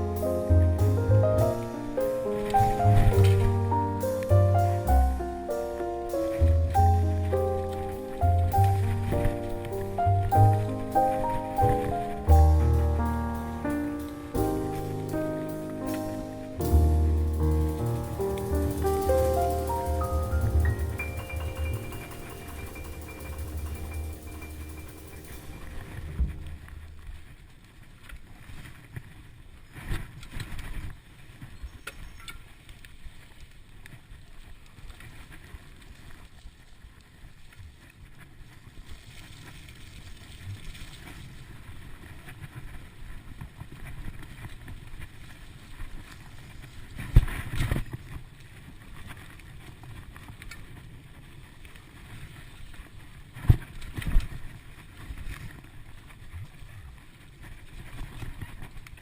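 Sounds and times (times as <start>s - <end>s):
tyre and wind rumble: 0.0s - 27.3s.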